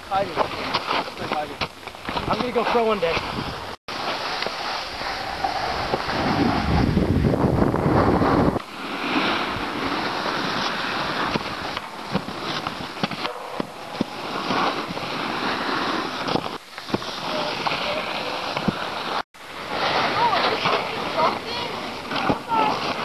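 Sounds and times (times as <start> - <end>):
snowboard scraping over snow: 0.0 - 23.0
wind noise on microphone: 2.0 - 4.1, 4.8 - 17.6.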